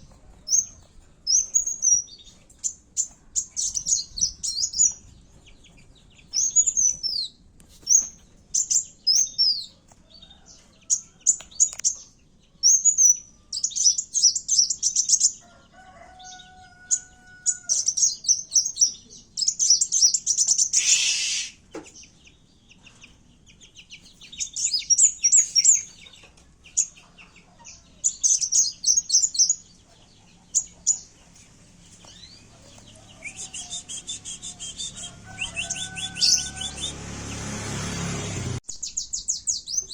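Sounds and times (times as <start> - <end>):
bird high rapid chirps and trills: 0.0 - 9.8, 10.9 - 15.4, 16.2 - 39.9
harsh rasping bird call: 20.6 - 21.7, 33.0 - 38.6.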